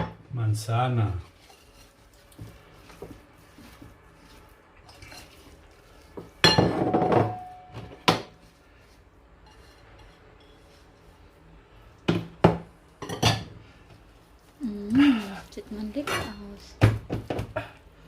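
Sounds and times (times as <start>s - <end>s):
dishes and utensils clinking: 4.8s - 8.2s, 13.0s - 13.6s, 15.9s - 16.6s.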